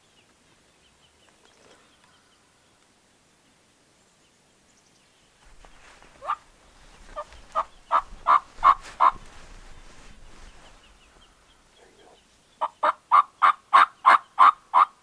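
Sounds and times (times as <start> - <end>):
turkey yelps: 6.2 - 6.4, 7.2 - 9.2, 12.6 - 15.0.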